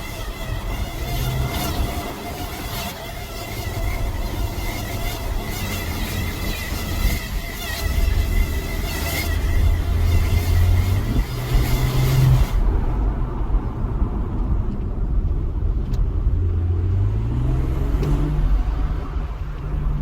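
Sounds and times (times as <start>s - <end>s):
high steady screech: 0.0s - 12.8s
car engine running: 0.0s - 16.8s.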